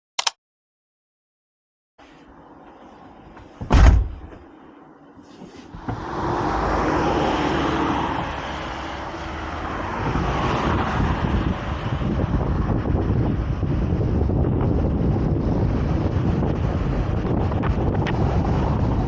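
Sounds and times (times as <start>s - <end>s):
vehicle rushing noise: 2.3s - 19.0s
vehicle door shutting: 3.4s - 4.5s, 5.3s - 6.1s
wind on microphone: 5.7s - 19.0s.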